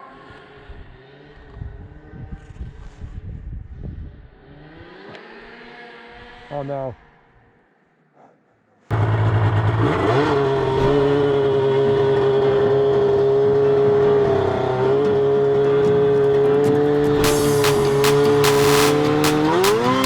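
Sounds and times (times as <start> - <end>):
snowmobile engine revving high: 4.4 - 6.7, 8.9 - 20.0
exhaust crackles: 8.9 - 20.0.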